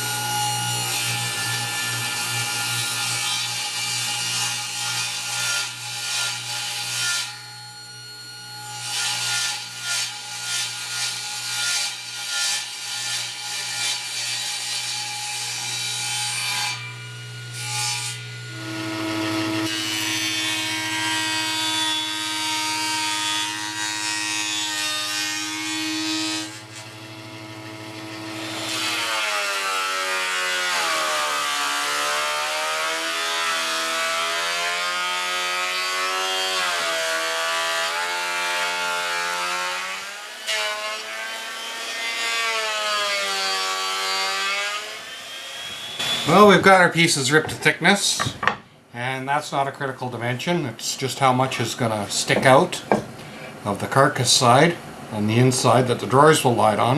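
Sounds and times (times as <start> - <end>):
table saw cutting wood: 0.0 - 48.6, 51.0 - 56.9
saw motor humming: 45.0 - 47.7.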